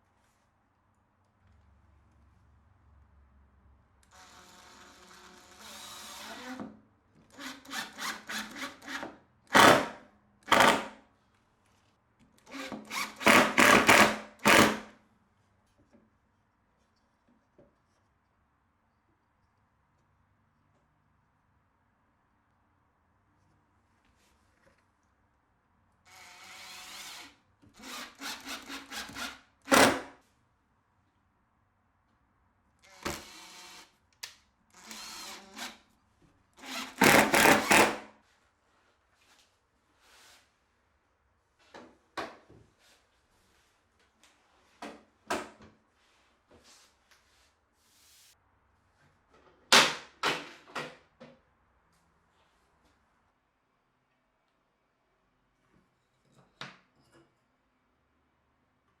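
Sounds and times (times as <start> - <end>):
motor-driven woodworking tool: 4.1 - 6.6, 26.1 - 29.9, 32.9 - 33.9, 34.8 - 35.8.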